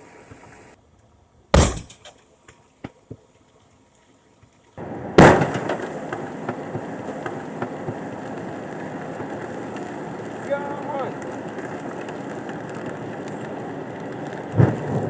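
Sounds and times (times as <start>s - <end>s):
sharp pops: 1.6s - 2.2s.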